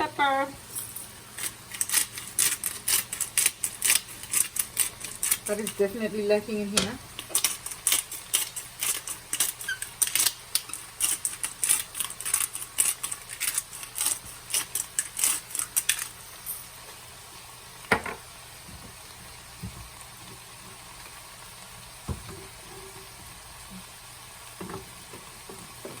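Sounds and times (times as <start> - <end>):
pepper grinder clicks: 1.4 - 5.8, 6.8 - 16.1.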